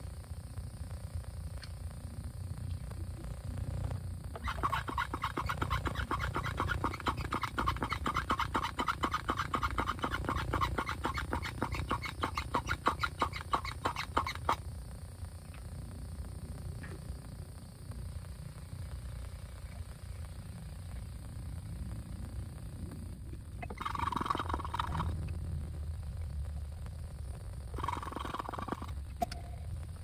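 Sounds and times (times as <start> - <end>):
hand vacuum pump strokes: 4.4 - 14.6.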